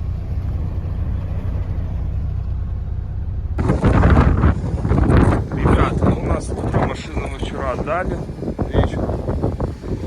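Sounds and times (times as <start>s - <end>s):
diesel truck engine rumbling: 0.0s - 10.0s
wind buffeting microphone: 3.6s - 10.0s.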